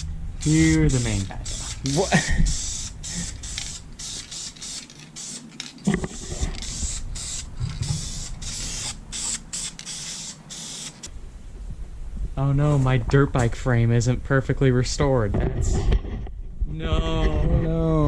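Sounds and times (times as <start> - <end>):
spray paint can hissing: 0.0 - 11.1.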